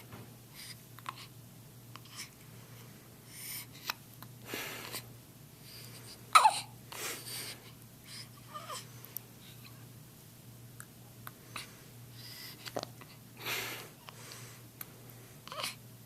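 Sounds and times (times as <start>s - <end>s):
baby hiccuping: 6.3s - 6.7s.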